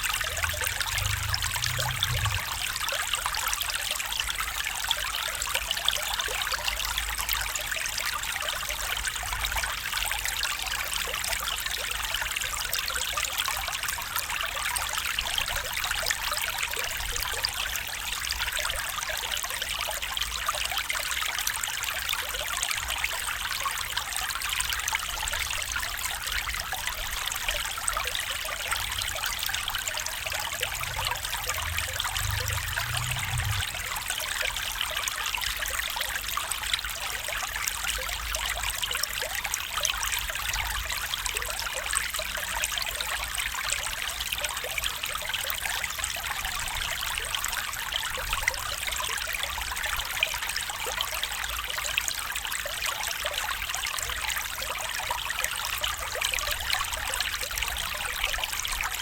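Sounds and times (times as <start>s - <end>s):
low rumble: 0.0s - 2.7s, 30.3s - 34.1s
stream babbling over stones: 0.0s - 59.0s.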